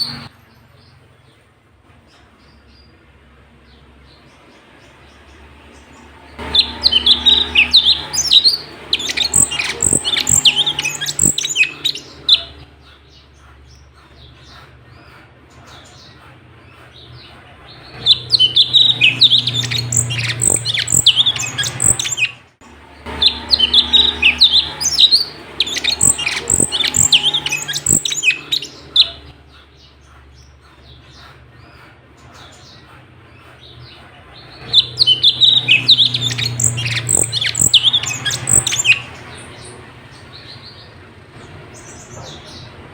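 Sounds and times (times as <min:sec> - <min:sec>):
songbird rapid chattering song: 0:00.0 - 0:42.9
low hum: 0:04.9 - 0:12.8, 0:17.9 - 0:29.4, 0:34.6 - 0:40.7.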